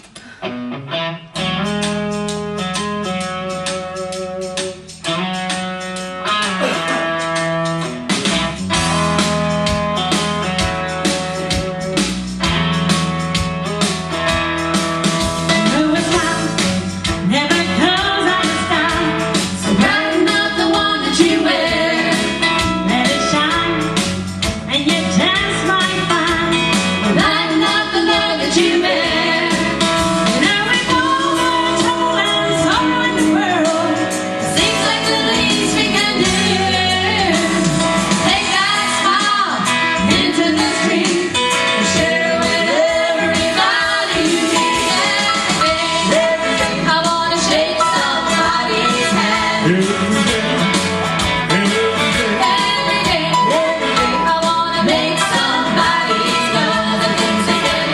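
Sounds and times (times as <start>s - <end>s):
guitar accompaniment: 0.0s - 57.9s
vocal group singing gospel: 17.5s - 23.5s, 25.3s - 57.9s.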